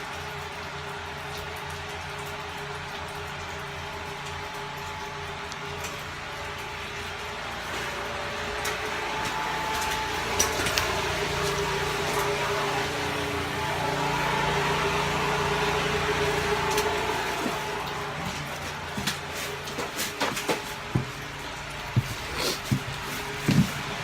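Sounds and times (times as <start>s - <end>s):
engine-like drone: 0.0s - 24.0s.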